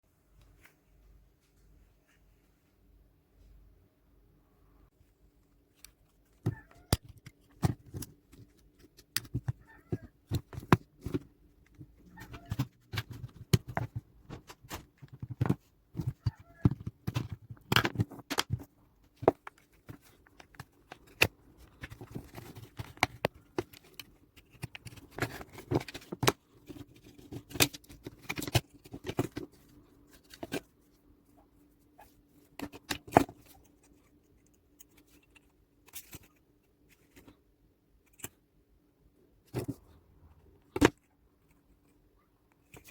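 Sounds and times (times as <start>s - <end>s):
faint steady hum: 0.1s - 42.9s
plastic case clicks and scraping: 6.4s - 30.7s.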